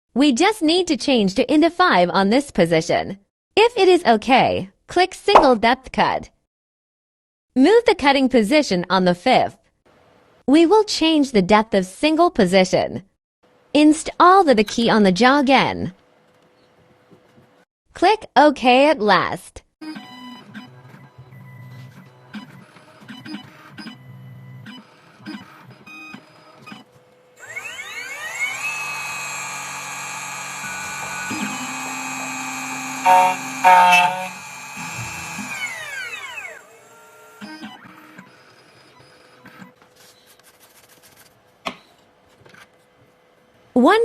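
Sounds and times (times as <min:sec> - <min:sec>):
cutting machine spindle whine: 0:27.4 - 0:37.5.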